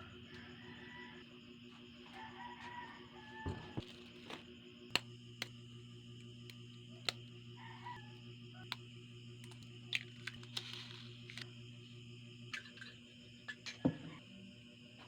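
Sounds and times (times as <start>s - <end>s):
low hum: 3.6s - 14.6s.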